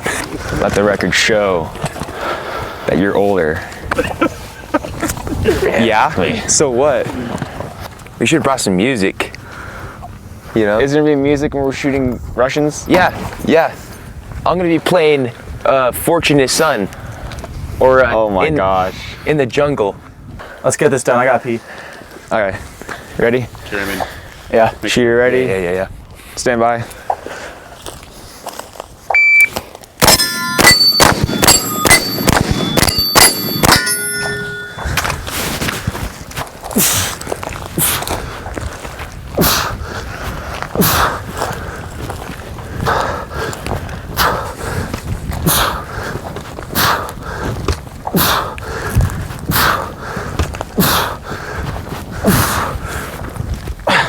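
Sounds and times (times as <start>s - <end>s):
person breathing hard: 2.0s - 2.9s, 9.4s - 10.0s, 36.8s - 53.2s
shot timer beep: 29.1s - 34.8s
steel targets clanging: 30.0s - 35.2s.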